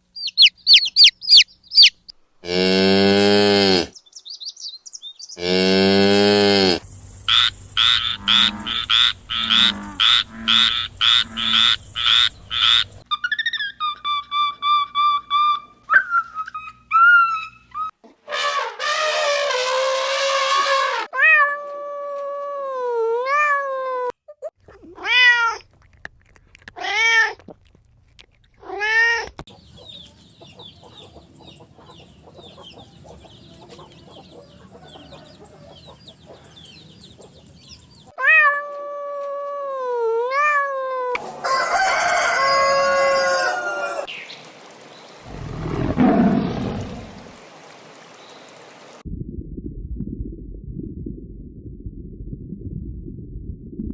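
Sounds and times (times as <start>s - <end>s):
faint chirping: 0.1s - 2.1s, 29.5s - 38.2s
rapid rhythmic animal calls: 0.2s - 2.1s, 7.3s - 15.2s, 29.5s - 38.2s
drawn-out gliding animal calls: 7.3s - 13.0s
cat meowing: 21.2s - 21.8s, 38.2s - 39.2s.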